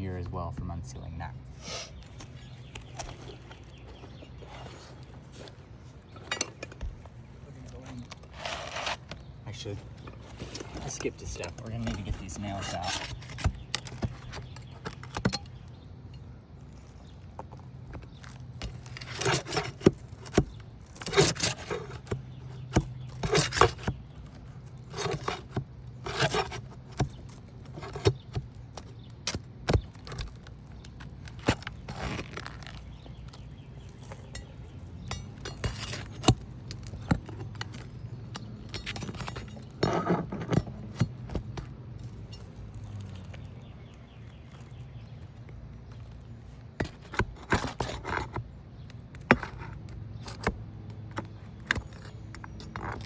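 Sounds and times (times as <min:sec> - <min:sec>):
metal tool scraping shingles: 0:08.0 - 0:17.0, 0:18.2 - 0:43.5.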